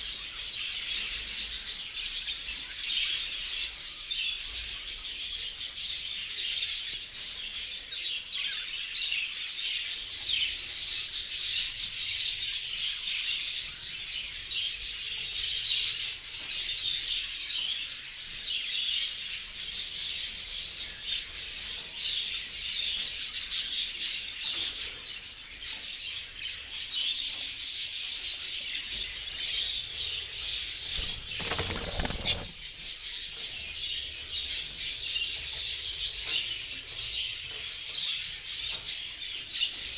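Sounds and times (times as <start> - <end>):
budgerigars chattering: 30.8 - 32.8
loud rustling: 30.9 - 32.7.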